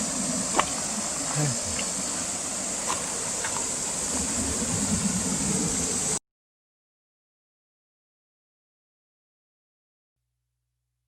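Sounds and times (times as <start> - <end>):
high-pitched hiss: 0.0 - 6.2
low uneven rumble: 0.0 - 6.2.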